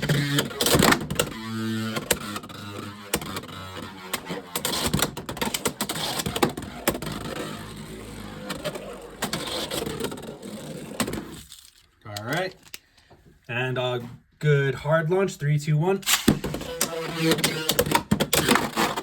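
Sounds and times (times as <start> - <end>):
spinning top scraping and rattling: 0.0 - 12.0
sharp clicks against plastic walls: 16.1 - 19.0.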